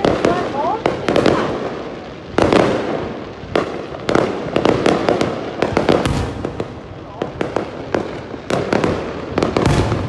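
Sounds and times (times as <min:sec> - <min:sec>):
fireworks bangs with rumble: 0:00.0 - 0:10.0.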